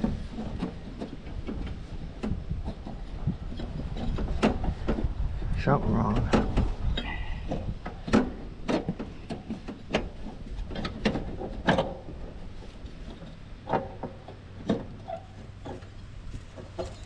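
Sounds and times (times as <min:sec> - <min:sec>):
clanks and knocks of parts handled: 0:06.1 - 0:17.0.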